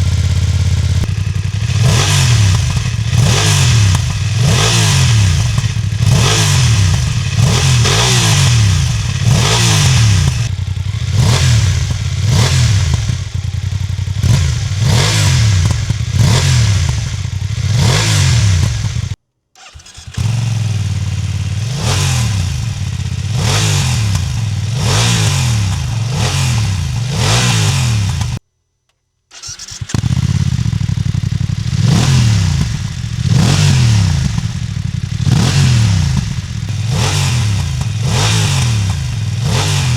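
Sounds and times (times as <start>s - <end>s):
motorcycle engine revving: 0.0s - 28.4s, 29.3s - 39.9s.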